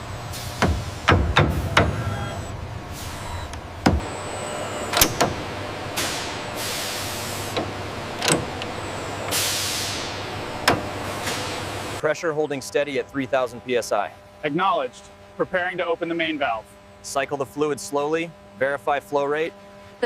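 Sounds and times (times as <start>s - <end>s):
machinery low hum: 0.0s - 20.0s
metallic clicks and clunks: 4.9s - 6.2s, 7.4s - 9.5s, 10.6s - 11.6s.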